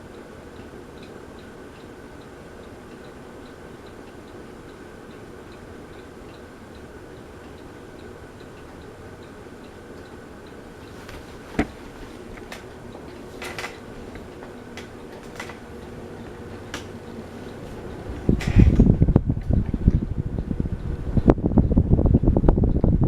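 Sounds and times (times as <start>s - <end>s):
ceiling fan humming: 0.0s - 23.0s
buffeting rush of air: 15.7s - 23.0s.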